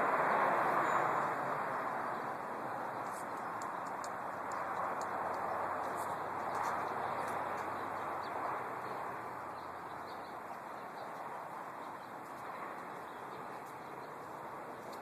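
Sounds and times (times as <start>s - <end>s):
steady rushing noise: 0.0s - 15.0s.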